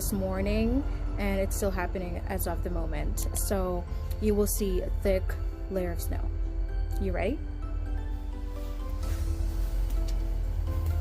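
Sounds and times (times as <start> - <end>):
background music held notes: 0.0 - 11.0
steady low bass: 0.0 - 11.0.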